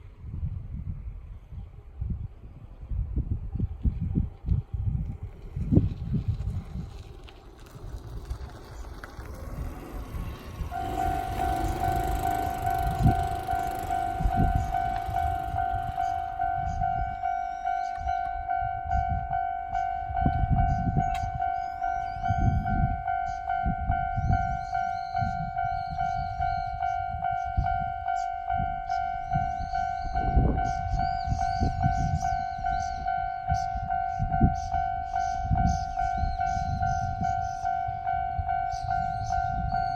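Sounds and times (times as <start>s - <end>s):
train rumble: 0.0s - 39.9s
level crossing alarm pulsing: 9.2s - 39.9s.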